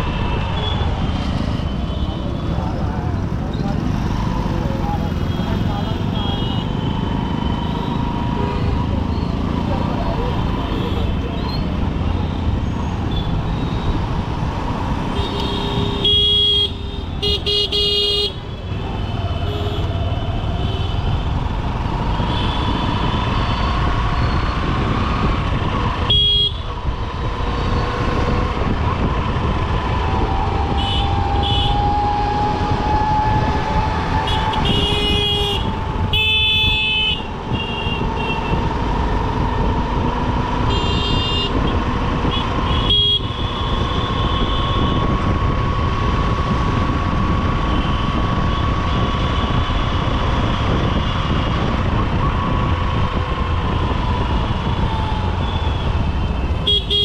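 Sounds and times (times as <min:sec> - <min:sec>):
road traffic rumble: 0:00.0 - 0:57.0
vehicle horns honking: 0:15.2 - 0:18.4, 0:34.3 - 0:38.6, 0:40.7 - 0:45.0, 0:56.6 - 0:57.0.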